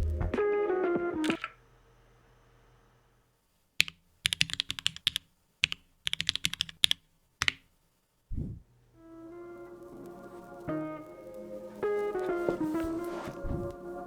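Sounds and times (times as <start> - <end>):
music: 0.0 - 1.5, 9.0 - 14.0
mechanical keyboard typing: 1.2 - 1.5, 3.8 - 7.6.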